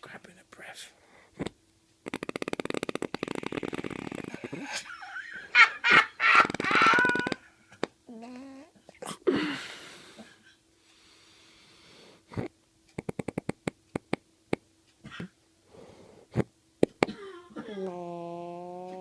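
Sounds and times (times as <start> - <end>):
faint steady hum: 0.0 - 19.0
sharp clicks: 1.4 - 4.3, 6.3 - 7.4, 12.9 - 14.6
loud gasping breath: 9.3 - 12.3.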